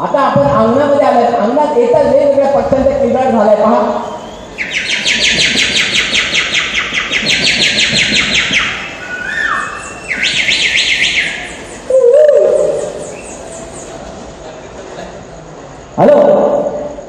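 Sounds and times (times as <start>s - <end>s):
man imitating bird calls: 0.9s - 13.9s.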